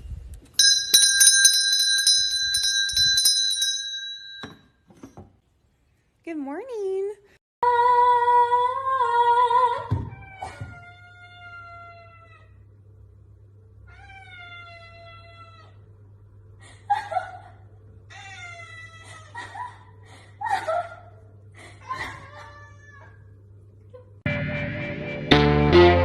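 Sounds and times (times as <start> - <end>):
cat meowing: 13.9 - 15.8.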